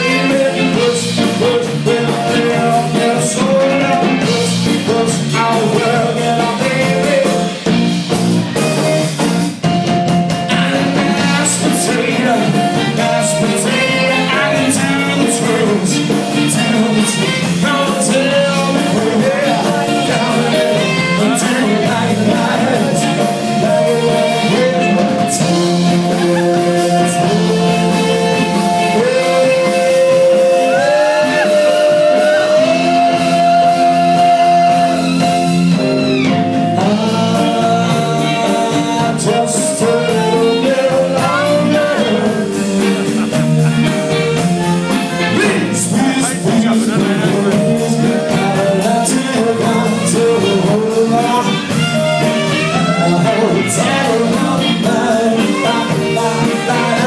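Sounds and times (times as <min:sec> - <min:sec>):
song with singing and guitar: 0:00.0 - 0:57.0.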